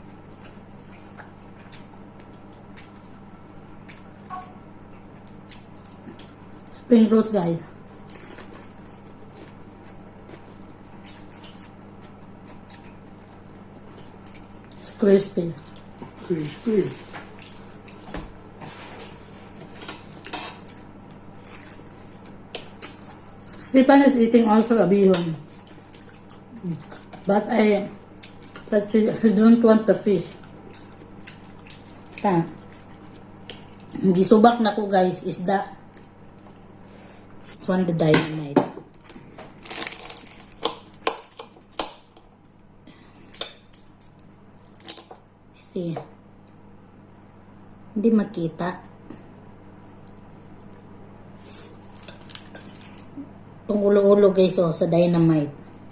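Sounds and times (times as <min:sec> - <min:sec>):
crunchy food being chewed: 0:00.1 - 0:06.9, 0:07.8 - 0:23.6, 0:25.4 - 0:27.3, 0:30.3 - 0:34.0, 0:39.0 - 0:45.2, 0:49.8 - 0:53.2.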